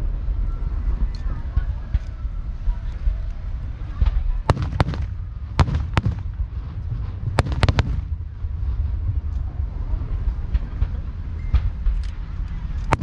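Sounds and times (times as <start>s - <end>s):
low rumble of booms: 3.8s - 12.0s
fireworks bursting: 4.1s - 8.6s.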